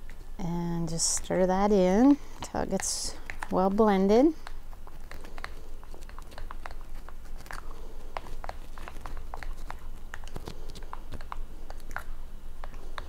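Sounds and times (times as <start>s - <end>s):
spoon stirring thick mixture: 1.0s - 10.4s.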